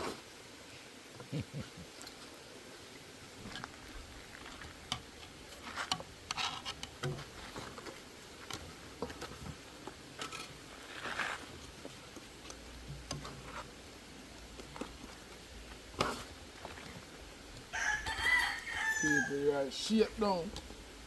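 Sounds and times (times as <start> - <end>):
short scraping rustles: 10.3 - 11.5.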